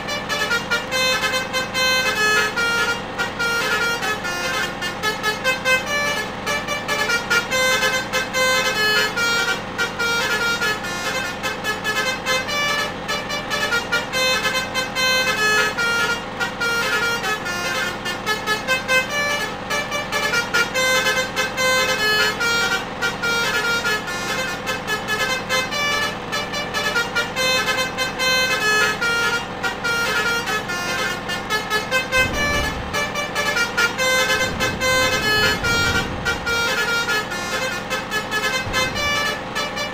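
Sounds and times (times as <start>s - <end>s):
bus horns playing tune: 0.0s - 39.9s
low rumble: 31.9s - 39.7s.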